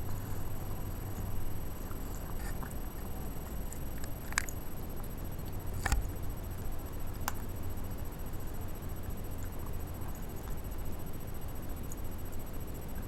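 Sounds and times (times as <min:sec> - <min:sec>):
steady low hum: 0:00.0 - 0:13.0
kittens chewing crunches: 0:01.9 - 0:04.7, 0:05.5 - 0:06.2.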